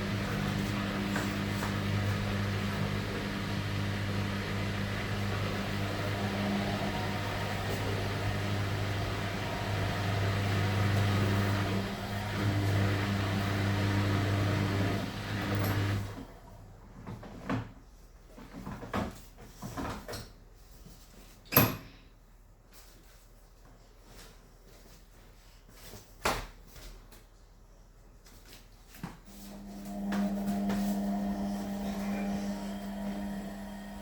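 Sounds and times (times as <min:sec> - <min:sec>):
washing machine humming and whirring: 0:00.0 - 0:17.8, 0:29.3 - 0:34.0.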